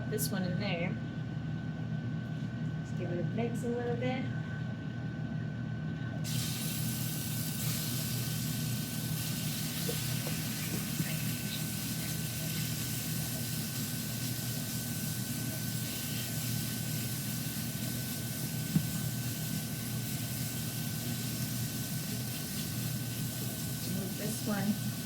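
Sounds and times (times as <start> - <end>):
meat sizzling in a pan: 6.3 - 25.0.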